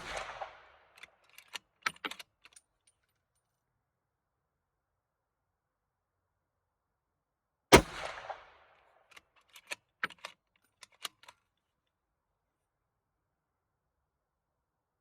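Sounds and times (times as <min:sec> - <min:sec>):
rifle shot with echo: 0:00.0 - 0:00.8, 0:07.7 - 0:08.6
rifle bolt metallic clicks: 0:01.0 - 0:02.7, 0:09.1 - 0:11.4.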